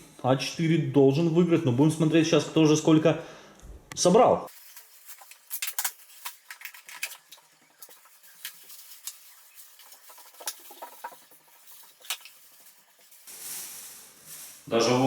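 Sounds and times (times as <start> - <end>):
plastic clicking and rustling: 4.7 - 12.4.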